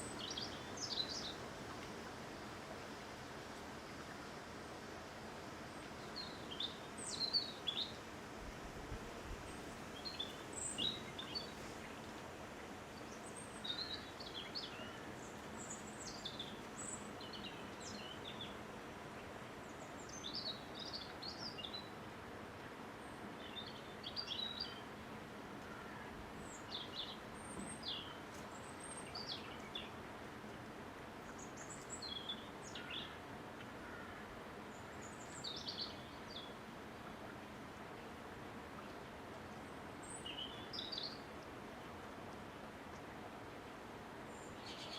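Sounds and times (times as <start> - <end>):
songbirds chirping: 0.0 - 8.6, 9.4 - 44.9
wind hiss: 0.0 - 18.0.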